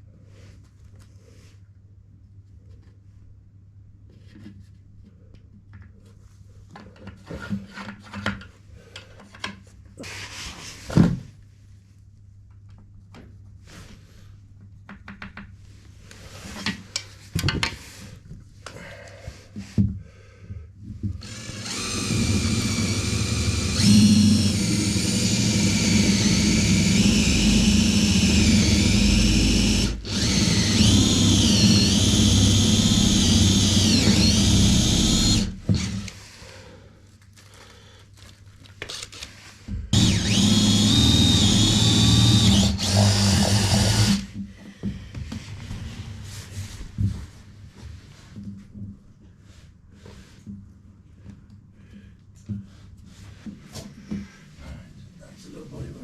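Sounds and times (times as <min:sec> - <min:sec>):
power tool whining: 0:21.2 - 0:36.4, 0:39.9 - 0:44.3.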